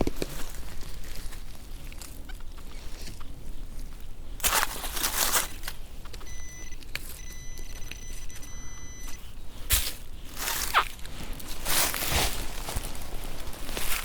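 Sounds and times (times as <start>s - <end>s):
rustling and scraping in leaf litter: 0.0s - 5.8s, 9.5s - 14.0s
metal detector electronic tone: 6.2s - 9.2s.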